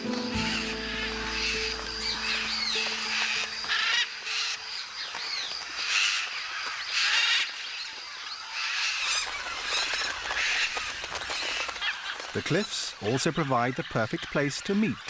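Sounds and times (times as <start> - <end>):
macaws squawking: 0.0 - 4.6.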